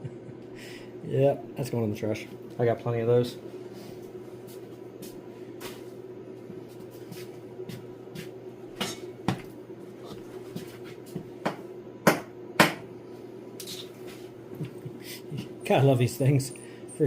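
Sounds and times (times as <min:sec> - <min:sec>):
steady hum: 0:00.0 - 0:17.0.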